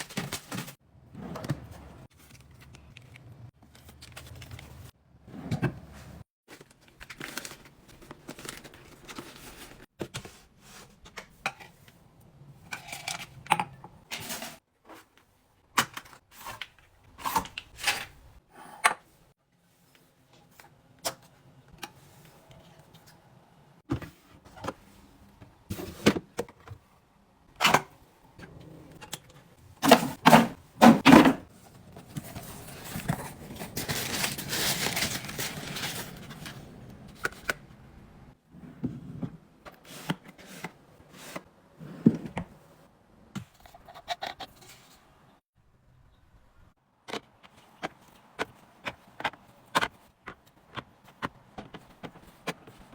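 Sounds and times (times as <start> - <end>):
packaging rustling: 6.5 - 9.9, 31.7 - 37.5.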